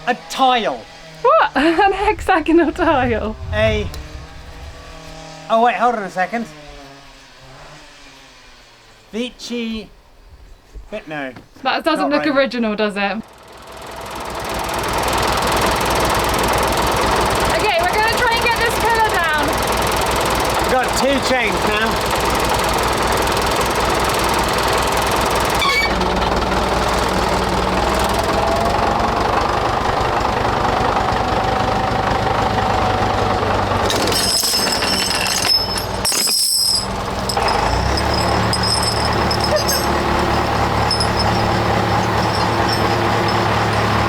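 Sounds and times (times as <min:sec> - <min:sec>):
tractor engine running under load: 0:13.2 - 0:44.0.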